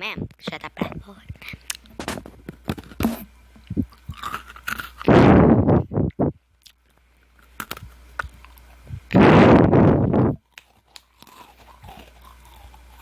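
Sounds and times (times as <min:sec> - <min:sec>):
cookie crunching: 0:00.0 - 0:05.3, 0:06.6 - 0:13.0
chewing clicks: 0:02.7 - 0:05.1, 0:06.6 - 0:08.8, 0:10.2 - 0:13.0.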